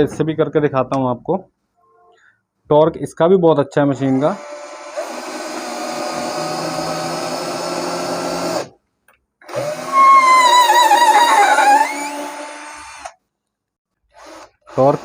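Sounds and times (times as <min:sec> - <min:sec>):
cordless drill motor whining: 0:09.5 - 0:13.2.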